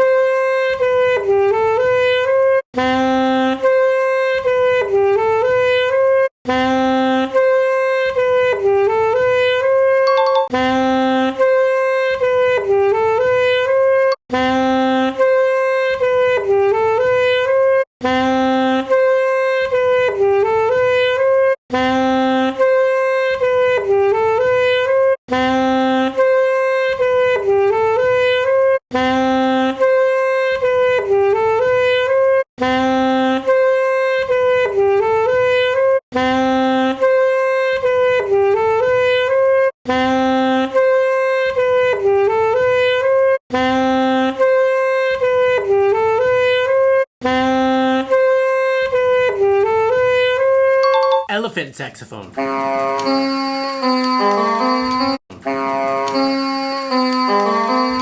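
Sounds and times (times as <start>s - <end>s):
saxophone repeating a phrase: 50.8s - 53.1s.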